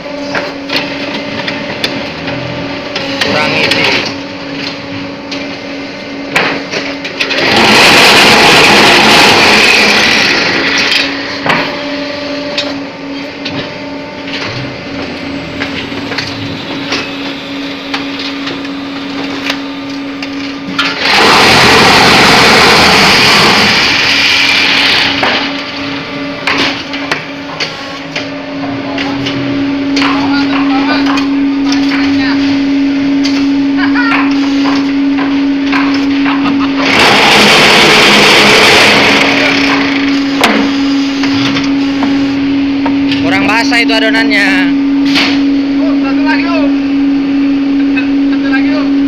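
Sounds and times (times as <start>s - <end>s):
machine motor hum: 0.0s - 49.0s
loud vibrator shaking: 7.2s - 11.3s, 20.8s - 25.6s, 36.4s - 40.2s.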